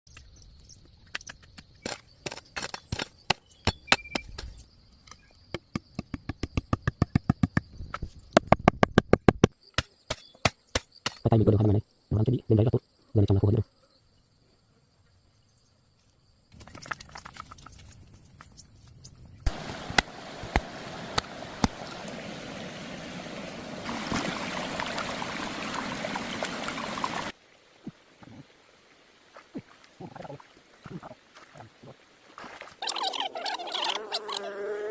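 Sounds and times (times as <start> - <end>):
running water hiss: 19.5 - 34.9.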